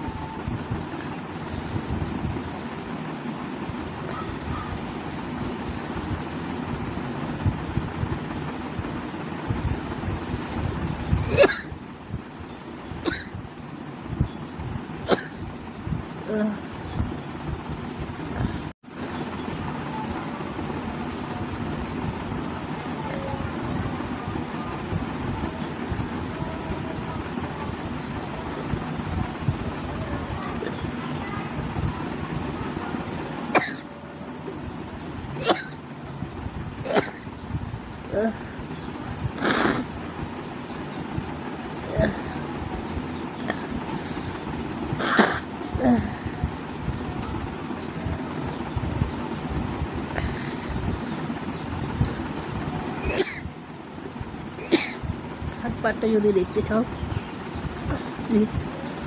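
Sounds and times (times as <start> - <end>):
person sneezing: 45.0 - 45.4.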